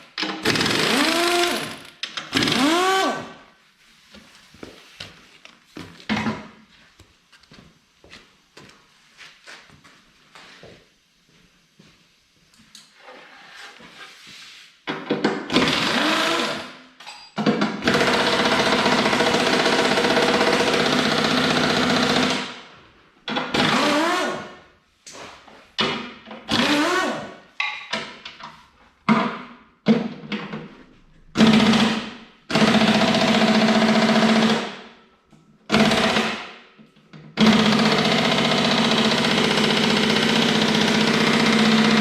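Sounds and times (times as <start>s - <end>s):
power tool motor bursts: 0.4s - 3.3s.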